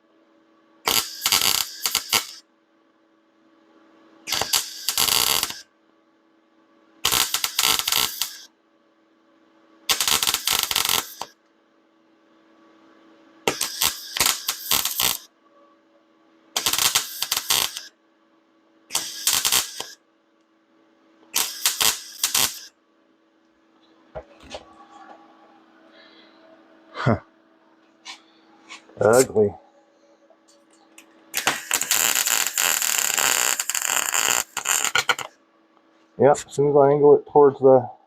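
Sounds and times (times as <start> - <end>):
faint steady hum: 0.0 - 38.0
arc welder crackling: 0.9 - 2.4, 4.3 - 5.6, 7.0 - 8.5, 9.9 - 11.4, 13.4 - 15.3, 16.5 - 17.9, 18.9 - 20.0, 21.2 - 22.7, 30.5 - 35.4.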